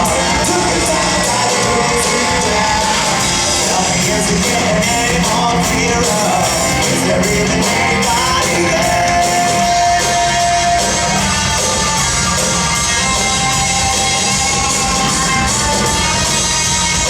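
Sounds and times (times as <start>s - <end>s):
person singing: 0.0s - 11.6s
rock band playing: 0.0s - 17.0s.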